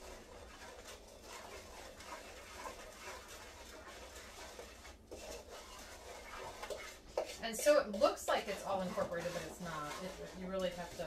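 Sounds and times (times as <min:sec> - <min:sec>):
spoon scraping a saucepan: 0:00.0 - 0:11.0.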